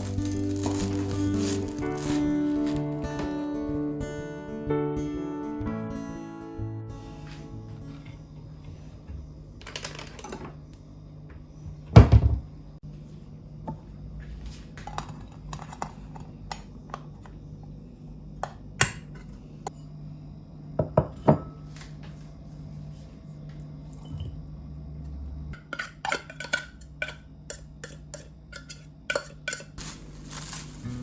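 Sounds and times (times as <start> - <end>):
dishes and utensils clinking: 25.6 - 30.7.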